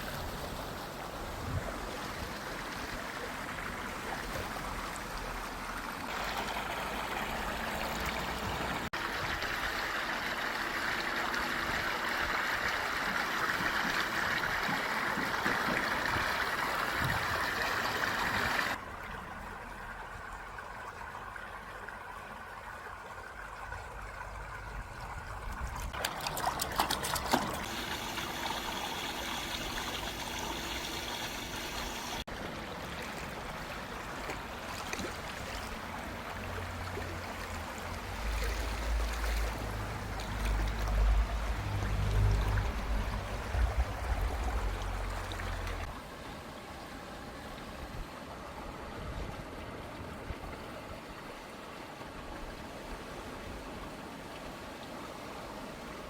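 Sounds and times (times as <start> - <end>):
water running and trickling: 0.0 - 46.0
sharp clicks or splashes: 25.5 - 28.8.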